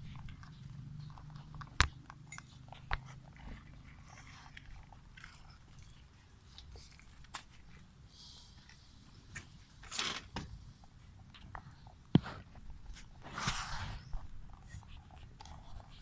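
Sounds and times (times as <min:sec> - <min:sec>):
pet chewing and crunching food: 0:00.0 - 0:09.7, 0:10.7 - 0:16.0.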